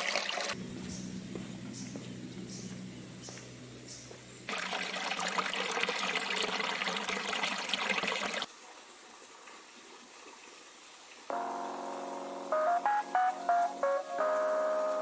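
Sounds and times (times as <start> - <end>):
low engine hum: 0.6 - 4.5
crackly rushing water: 3.4 - 15.0.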